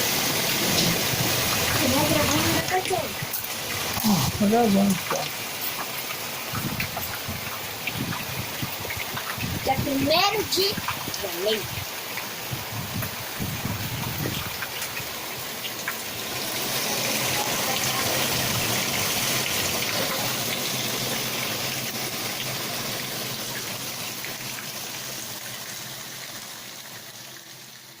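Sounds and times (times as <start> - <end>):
heavy rain falling: 0.0 - 28.0.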